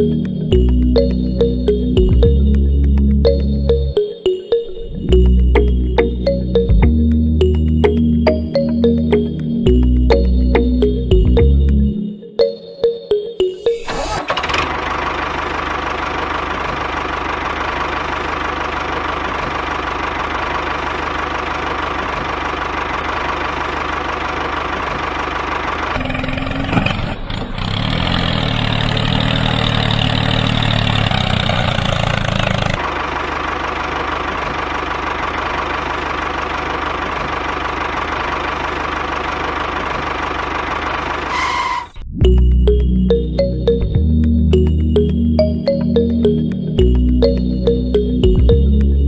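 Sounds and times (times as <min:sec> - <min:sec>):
small engine running: 0:13.8 - 0:41.9.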